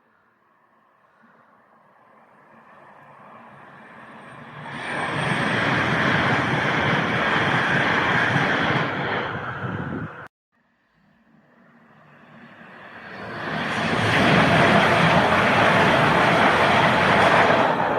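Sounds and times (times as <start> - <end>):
train wheels on rail: 4.4 - 10.3, 12.8 - 17.9.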